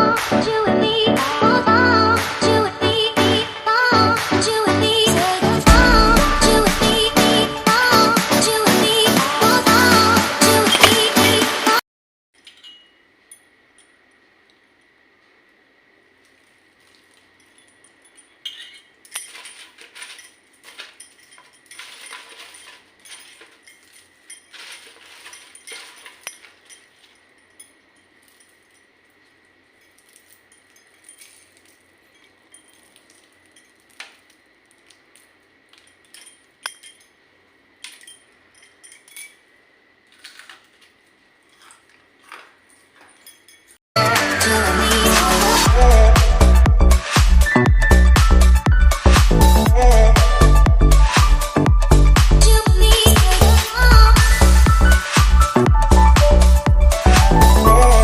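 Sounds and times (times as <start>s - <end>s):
loud music: 5.1s - 11.8s, 44.0s - 53.6s, 54.2s - 58.0s
kitchen utensils clinking: 10.4s - 11.4s, 12.4s - 14.1s, 17.3s - 34.3s, 41.4s - 43.8s.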